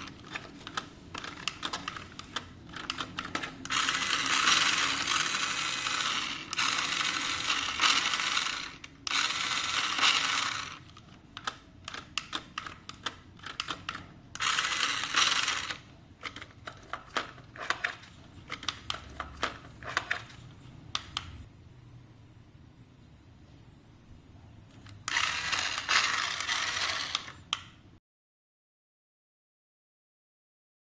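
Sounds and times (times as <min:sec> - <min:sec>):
plastic clicks and rattles: 0:00.0 - 0:04.8, 0:10.0 - 0:14.5, 0:15.2 - 0:20.4
toy car electric motor running: 0:00.0 - 0:10.9, 0:14.4 - 0:16.4, 0:25.0 - 0:27.4.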